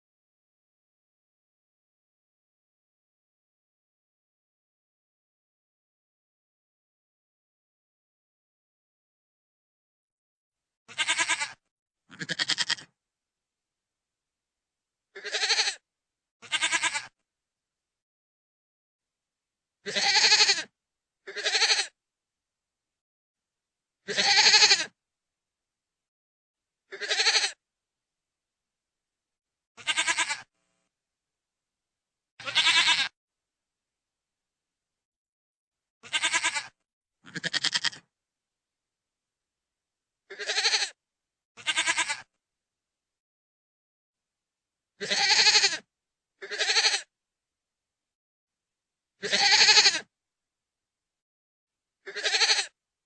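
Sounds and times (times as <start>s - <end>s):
goat bleating: 10.9s - 12.9s, 15.2s - 15.8s, 16.4s - 17.2s, 19.8s - 20.7s, 21.3s - 22.0s, 24.1s - 24.9s, 26.9s - 27.6s, 29.8s - 30.5s, 32.4s - 33.2s, 36.0s - 38.1s, 40.3s - 41.0s, 41.6s - 42.3s, 45.0s - 47.1s, 49.2s - 50.1s, 52.0s - 52.8s.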